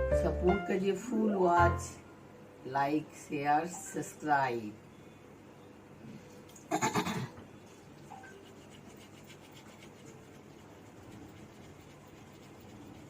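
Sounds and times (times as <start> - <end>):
toothbrush scrubbing teeth: 7.7 - 13.0.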